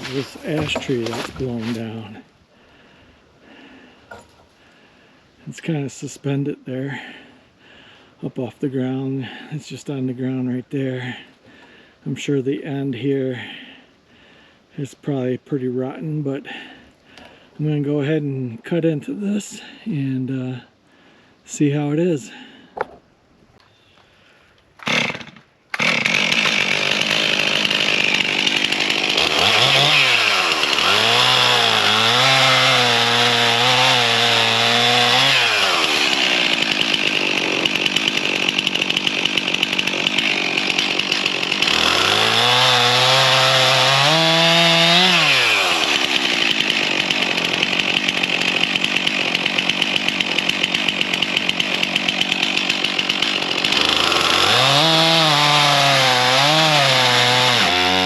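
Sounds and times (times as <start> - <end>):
chainsaw cutting log: 0.0 - 2.2, 24.8 - 58.0.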